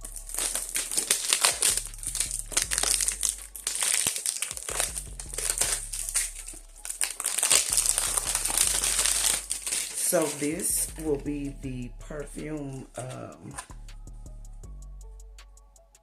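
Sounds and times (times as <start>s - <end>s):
packaging crinkling and rustling: 0.0s - 10.7s.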